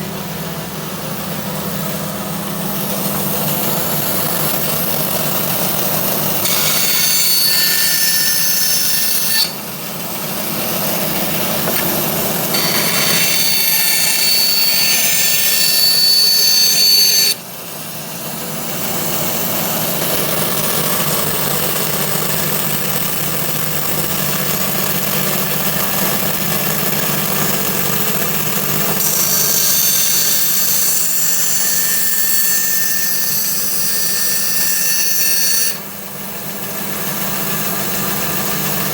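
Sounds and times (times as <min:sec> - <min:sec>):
bandsaw motor humming: 0:01.8 - 0:17.4, 0:25.7 - 0:35.8.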